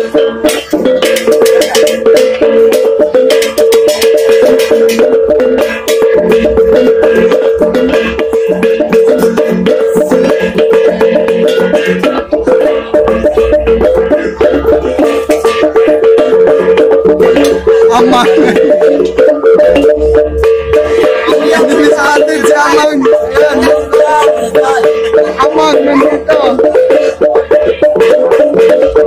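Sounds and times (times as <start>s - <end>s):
fast percussion strikes: 0.0s - 29.0s.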